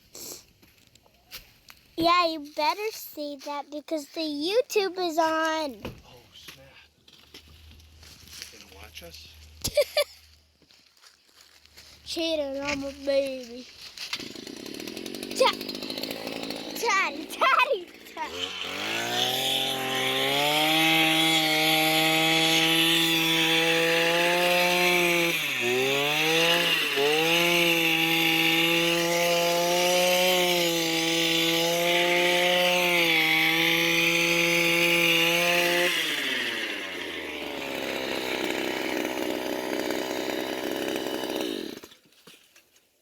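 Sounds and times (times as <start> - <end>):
earth auger engine running: 14.1 - 41.9.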